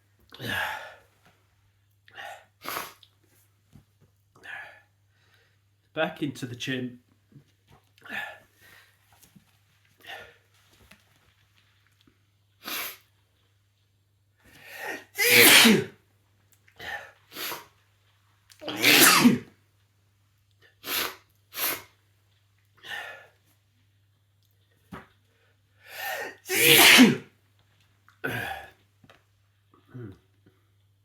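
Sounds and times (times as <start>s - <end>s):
person sneezing: 14.7s - 16.0s, 18.6s - 19.5s, 26.0s - 27.3s.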